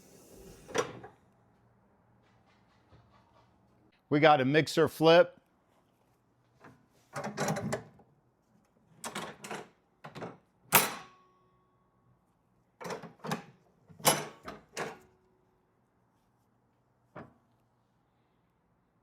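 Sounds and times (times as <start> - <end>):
wooden and metal clacks: 2.2 - 3.8.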